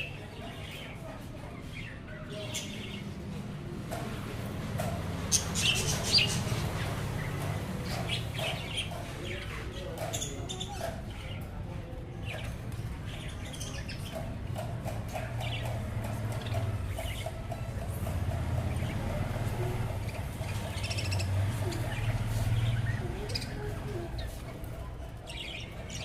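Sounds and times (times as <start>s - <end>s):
budgerigars chirping: 4.8s - 11.5s, 12.3s - 24.4s.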